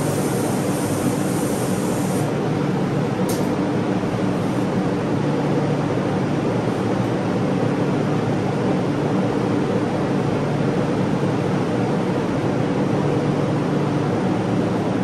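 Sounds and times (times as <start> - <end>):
spray-painting equipment air rush: 0.0 - 2.4.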